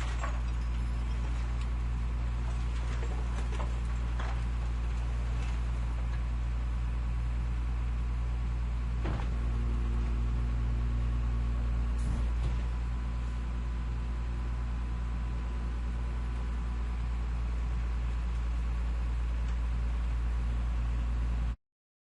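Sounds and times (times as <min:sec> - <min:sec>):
truck engine idling: 0:00.0 - 0:21.3.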